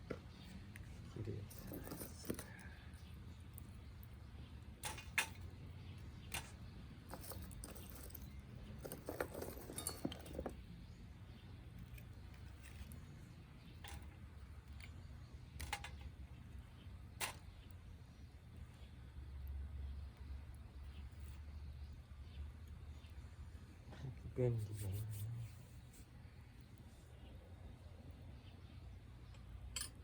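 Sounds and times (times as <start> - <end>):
metal gear clinking: 7.1 - 10.6.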